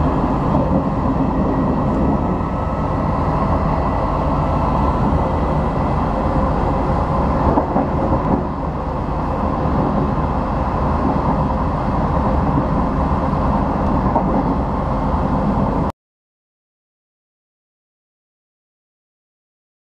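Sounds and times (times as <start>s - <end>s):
train wheels rumbling: 0.0s - 15.9s.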